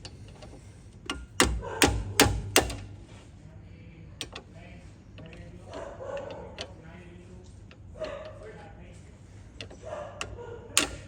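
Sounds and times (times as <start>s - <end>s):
hand tools knocking on metal: 1.1s - 3.2s, 10.8s - 11.0s.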